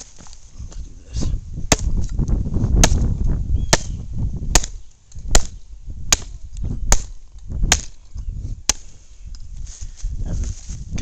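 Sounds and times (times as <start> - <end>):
tomahawk chopping into log: 1.7 - 3.1, 3.7 - 8.0, 8.7 - 8.9.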